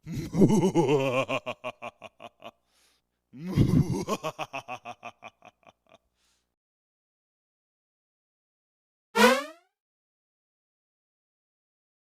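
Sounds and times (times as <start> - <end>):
person laughing: 0.0 - 2.5, 3.4 - 6.0.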